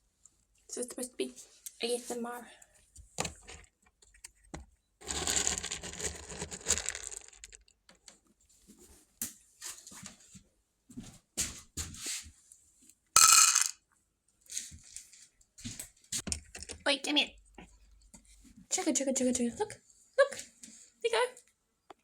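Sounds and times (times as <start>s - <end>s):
rustling: 5.0s - 7.6s.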